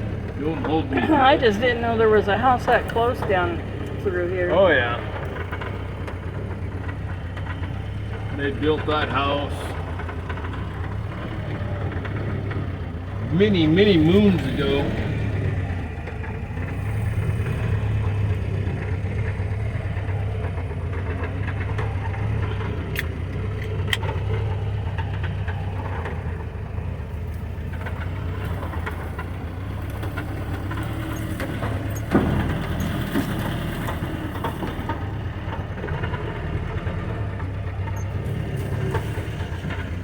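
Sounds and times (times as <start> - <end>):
car engine running: 0.0 - 40.0
clicks and rattles: 20.1 - 40.0.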